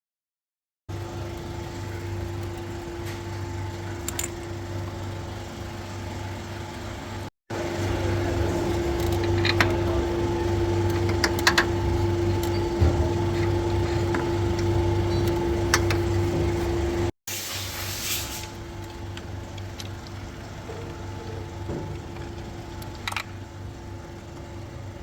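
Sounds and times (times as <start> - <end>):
car engine idling: 0.9 - 17.1.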